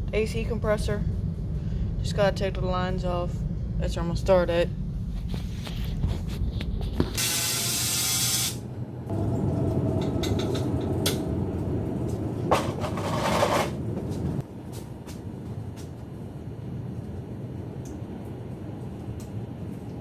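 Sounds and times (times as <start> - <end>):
pressurized gas hissing: 7.2 - 8.6.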